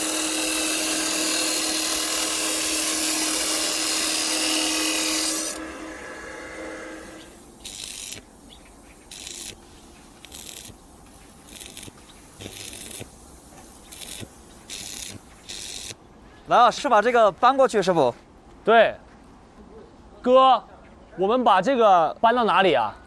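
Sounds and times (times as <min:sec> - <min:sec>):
power tool: 0:00.0 - 0:08.4, 0:09.1 - 0:10.8, 0:11.4 - 0:16.0
spray paint hissing: 0:07.0 - 0:16.0.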